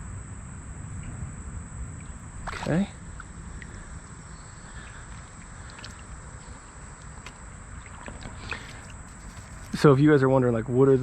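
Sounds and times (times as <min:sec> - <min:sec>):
creek water flowing: 0:02.0 - 0:09.9.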